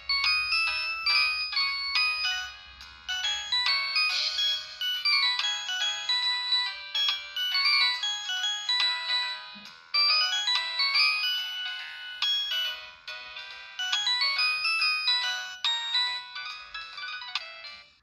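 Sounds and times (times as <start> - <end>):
polyphonic phone ringtone melody: 0.0 - 18.0.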